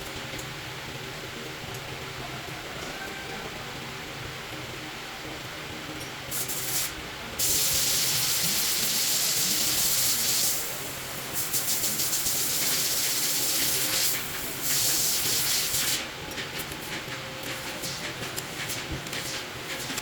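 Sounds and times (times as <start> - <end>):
loud hissing spray: 6.3 - 16.0.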